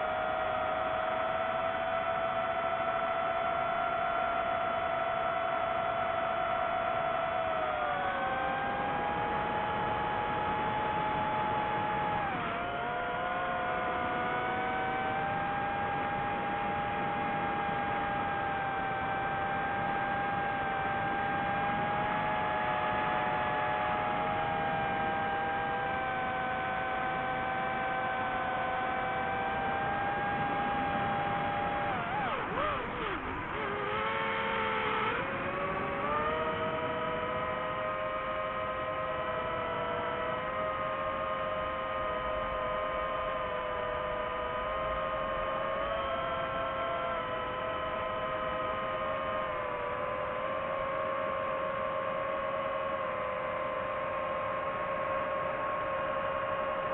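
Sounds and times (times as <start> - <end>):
drone motors whining: 0.0 - 56.9.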